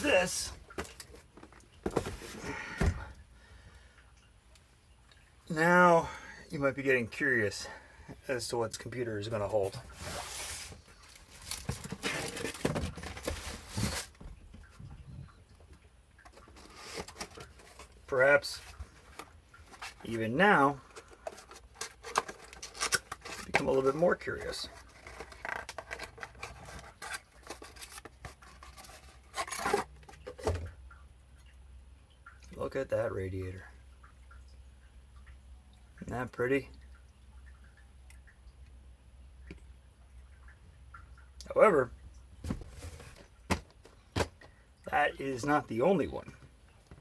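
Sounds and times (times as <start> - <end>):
packaging rustling: 9.9 - 14.2, 16.3 - 18.0, 20.8 - 30.5.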